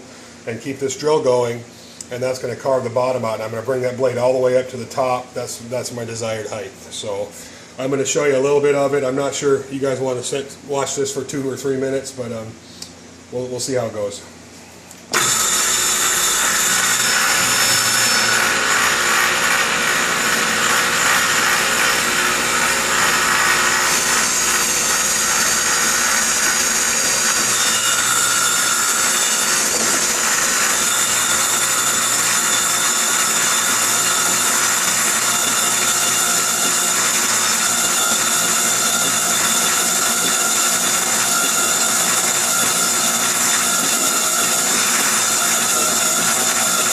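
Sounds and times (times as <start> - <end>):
table saw cutting wood: 15.1 - 46.9.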